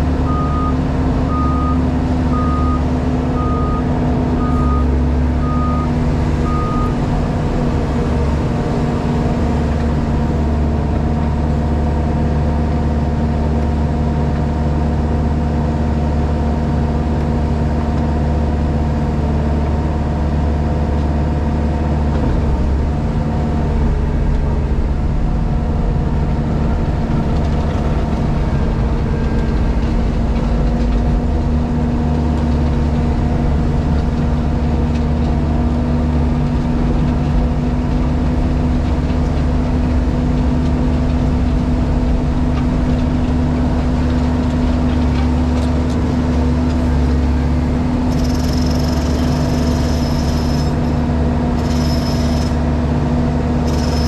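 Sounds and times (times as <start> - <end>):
diesel engine running: 0.0 - 54.0
reversing alarm beeping: 0.2 - 7.0, 48.1 - 50.7, 51.6 - 52.6, 53.7 - 54.0.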